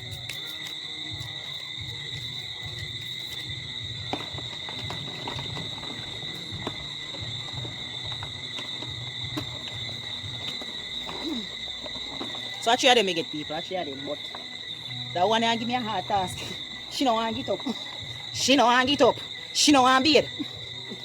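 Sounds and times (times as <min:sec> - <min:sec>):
insects chirping: 0:00.0 - 0:21.0.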